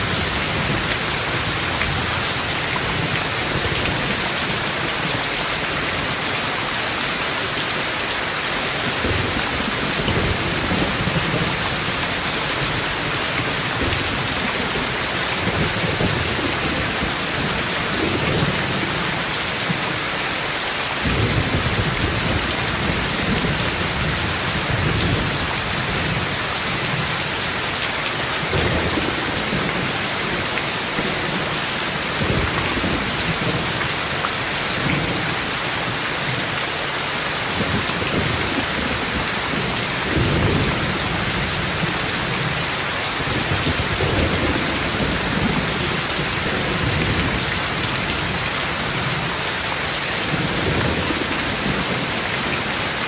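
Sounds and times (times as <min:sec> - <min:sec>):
heavy rain falling: 0:00.0 - 0:53.0
thunder rumbling: 0:08.8 - 0:19.8, 0:21.0 - 0:27.5, 0:28.4 - 0:35.4, 0:37.6 - 0:49.4.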